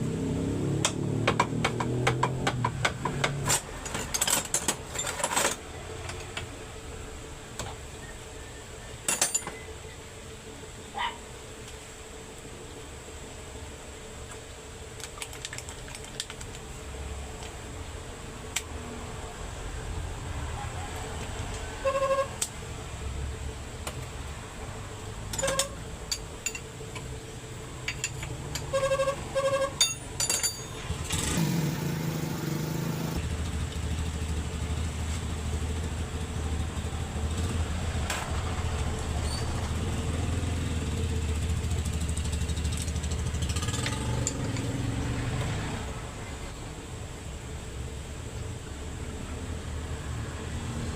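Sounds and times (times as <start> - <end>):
diesel engine cranking and idling: 22.4 - 49.3.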